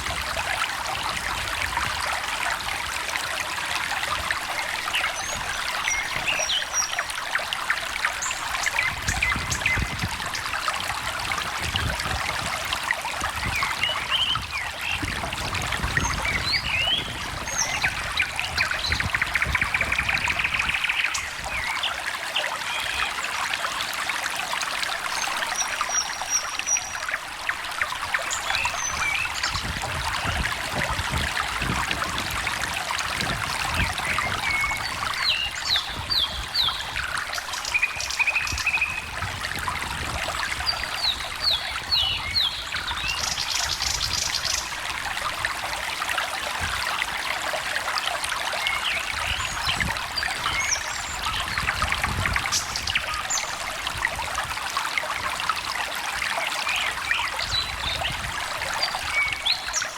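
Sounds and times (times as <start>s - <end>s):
stream trickling: 0.0s - 59.9s
songbirds calling: 4.2s - 10.6s, 13.3s - 30.8s, 33.1s - 45.3s, 48.6s - 53.9s, 56.4s - 59.9s.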